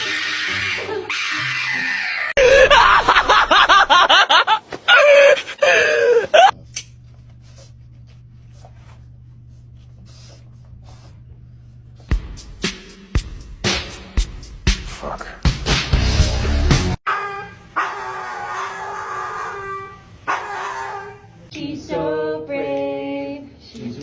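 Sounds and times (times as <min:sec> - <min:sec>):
shrill screaming: 0:00.0 - 0:02.9, 0:17.0 - 0:21.4.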